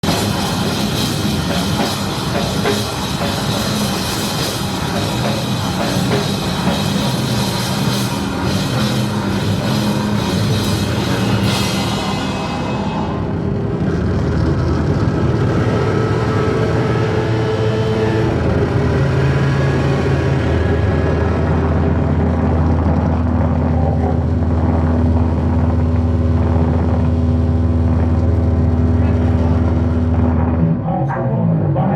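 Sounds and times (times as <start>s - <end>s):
crashing cymbals: 0.0s - 13.6s
live rock band: 0.0s - 23.9s.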